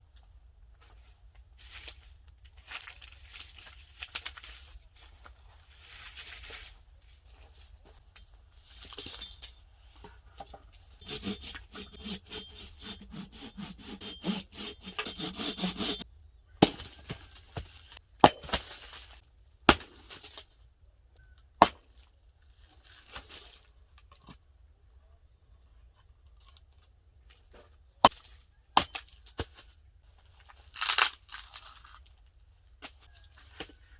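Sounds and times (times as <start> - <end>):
wood scraping and rustling: 0.8 - 16.0
rhythmic rasping: 11.0 - 16.0
axe striking wood: 16.6 - 17.0, 18.2 - 18.8, 19.7 - 20.0, 21.6 - 21.8.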